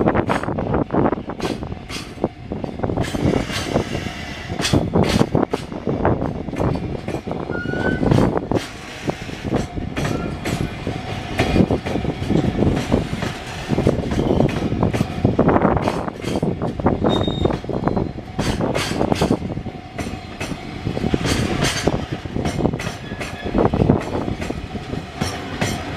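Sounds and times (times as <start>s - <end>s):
train wheels clattering over rails: 0.0s - 25.9s
short high squeak: 17.1s - 18.1s.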